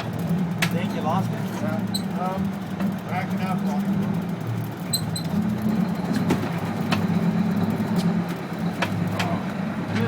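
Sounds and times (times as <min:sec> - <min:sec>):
boat engine idling: 0:00.0 - 0:10.0.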